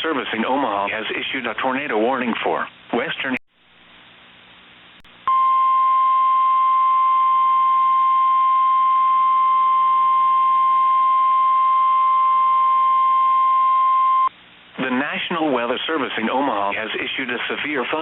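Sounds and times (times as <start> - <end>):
faint radio hiss: 0.0 - 5.3, 14.3 - 18.0.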